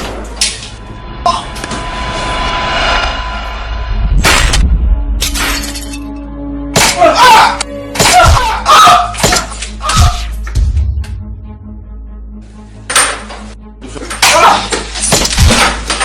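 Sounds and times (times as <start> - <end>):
low rumble: 0.0 - 6.7
loud bangs and crashes: 0.0 - 6.9
music: 0.0 - 16.0
glass shattering: 5.2 - 6.2.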